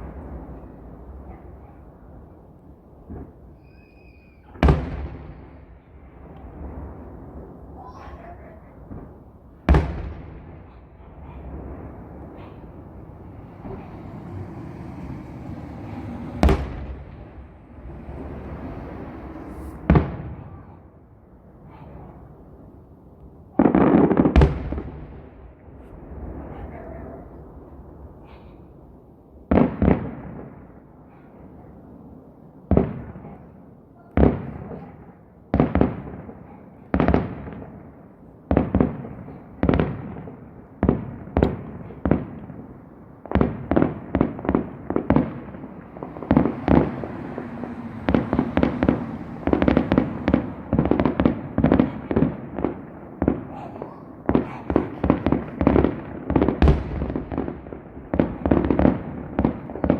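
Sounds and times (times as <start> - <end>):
firework shells bursting: 8.9 - 20.4, 43.4 - 53.5, 54.1 - 59.9.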